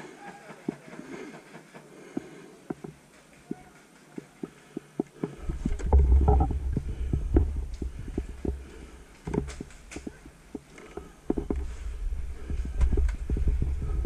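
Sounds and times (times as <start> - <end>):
footsteps: 0.0 - 14.0
wind buffeting microphone: 11.4 - 14.0.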